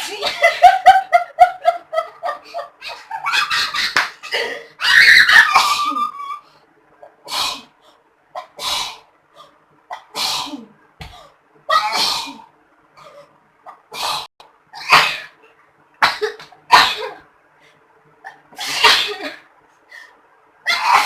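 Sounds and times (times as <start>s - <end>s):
people sneezing: 16.0s - 17.2s.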